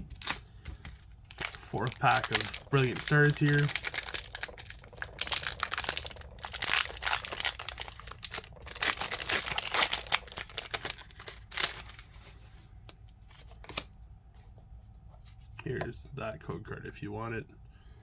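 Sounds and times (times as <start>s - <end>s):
foil wrapper tearing and crinkling: 0.0s - 12.2s.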